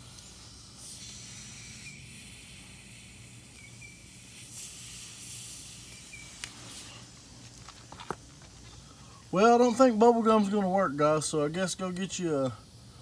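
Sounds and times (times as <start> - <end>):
air hissing from tire: 0.0 - 9.3.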